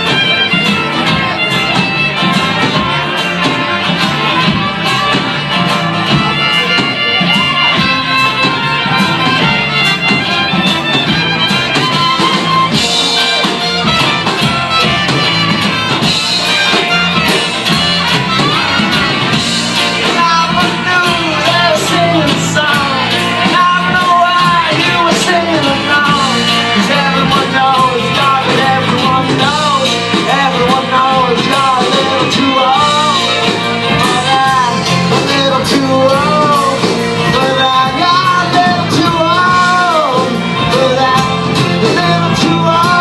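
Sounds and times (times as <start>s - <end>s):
bending lead guitar line: 0.0s - 43.0s
live rock band playing: 0.0s - 43.0s.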